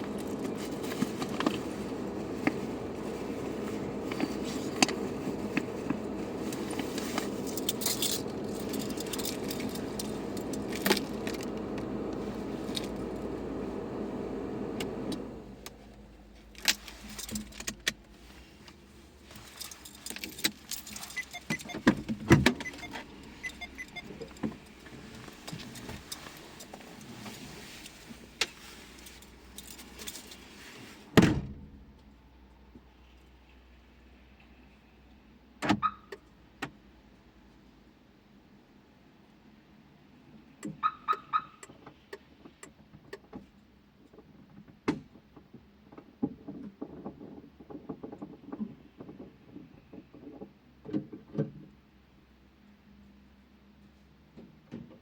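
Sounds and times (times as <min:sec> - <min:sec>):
rustling: 0:00.0 - 0:14.0, 0:15.2 - 0:31.1
car engine running: 0:00.0 - 0:30.7
keys jangling: 0:06.4 - 0:11.6, 0:19.3 - 0:28.0.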